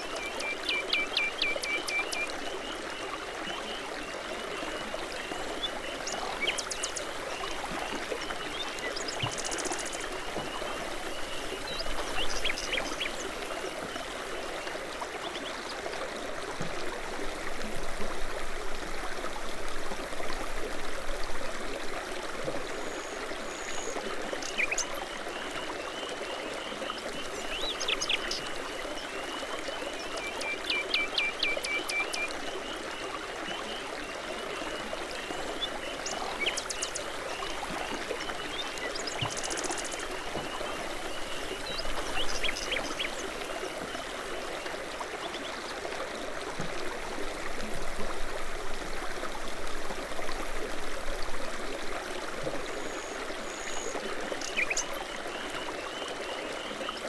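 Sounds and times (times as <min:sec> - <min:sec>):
brook flowing: 0:00.0 - 0:57.0
songbirds chirping: 0:33.5 - 0:45.7.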